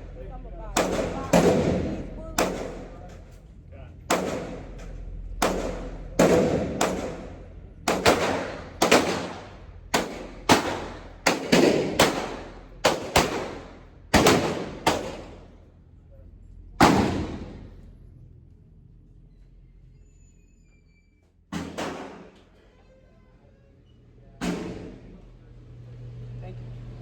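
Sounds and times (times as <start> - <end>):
pistol shots echoing: 0.7 - 3.0, 4.1 - 4.8, 5.4 - 15.5, 16.8 - 17.8, 21.6 - 22.3, 24.4 - 25.2.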